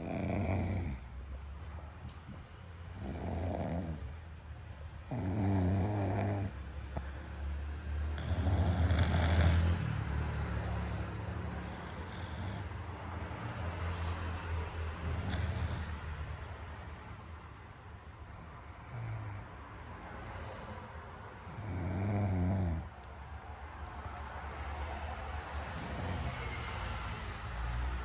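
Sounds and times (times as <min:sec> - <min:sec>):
person snoring: 0:00.0 - 0:01.0, 0:02.9 - 0:04.1, 0:05.0 - 0:07.1, 0:08.1 - 0:10.0, 0:11.7 - 0:13.6, 0:15.0 - 0:16.0, 0:18.7 - 0:19.5, 0:21.4 - 0:22.9, 0:25.4 - 0:26.6.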